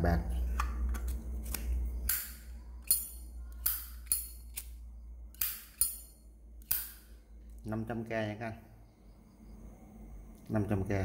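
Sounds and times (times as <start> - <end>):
lighter lid metallic clinks: 5.4 - 7.0.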